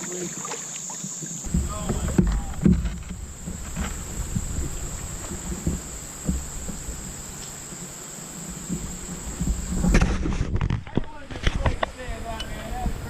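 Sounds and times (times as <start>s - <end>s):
kayak knocks and splashes: 0.0s - 7.9s
creek water flowing: 0.0s - 10.3s
insect chorus: 0.0s - 13.0s.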